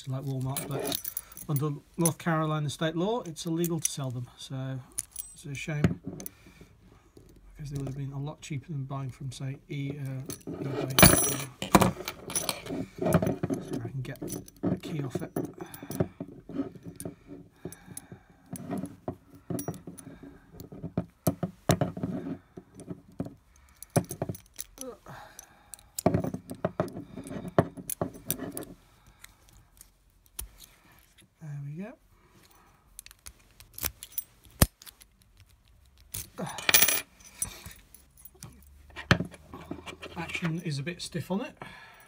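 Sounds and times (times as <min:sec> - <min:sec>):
keys clinking against padlock: 0:00.3 - 0:01.7, 0:04.9 - 0:05.4, 0:10.0 - 0:20.9, 0:22.7 - 0:30.8, 0:32.4 - 0:40.5.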